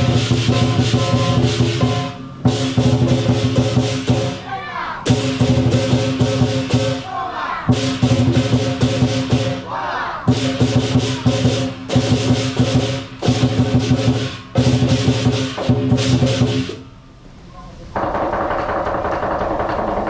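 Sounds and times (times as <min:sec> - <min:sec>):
gong: 0:00.0 - 0:04.4
clashing cymbals: 0:00.0 - 0:07.1, 0:07.7 - 0:09.7, 0:10.3 - 0:17.3
drum: 0:00.0 - 0:17.0, 0:17.9 - 0:20.0.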